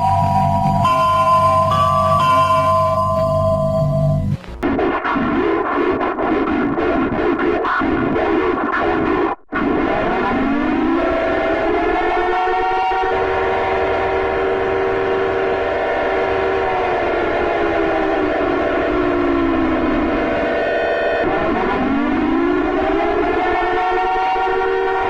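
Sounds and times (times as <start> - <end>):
air-raid siren wailing: 0.0 - 4.4, 11.0 - 25.0.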